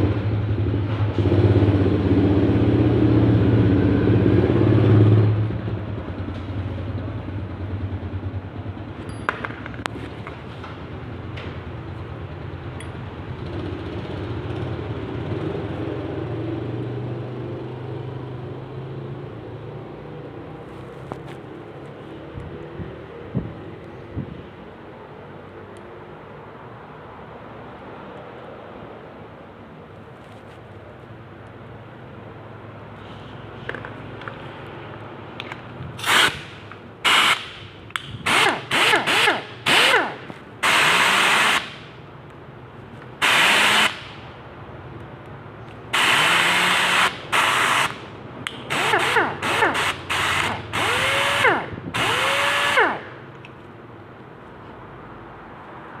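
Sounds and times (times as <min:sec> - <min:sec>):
pneumatic impact wrench bursts: 0:36.0 - 0:41.9, 0:43.2 - 0:44.3, 0:45.9 - 0:53.2.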